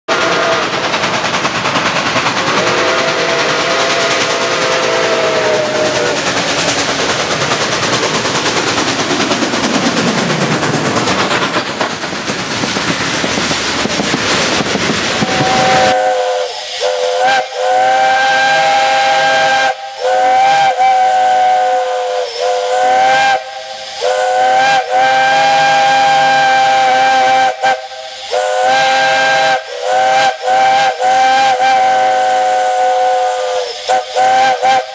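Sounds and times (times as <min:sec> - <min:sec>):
steam locomotive chime whistle: 0:00.1 - 0:00.8, 0:02.5 - 0:06.3, 0:15.2 - 0:34.9
hiss of escaping steam: 0:00.1 - 0:34.9.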